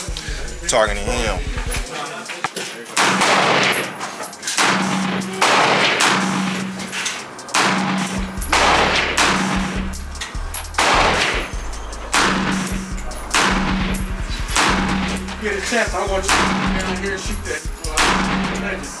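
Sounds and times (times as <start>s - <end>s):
background music: 0.0s - 19.0s
pistol shots: 3.0s - 19.0s.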